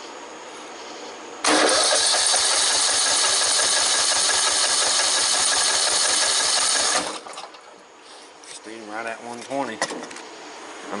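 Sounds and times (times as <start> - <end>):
electric starter cranking engine: 1.4 - 7.6.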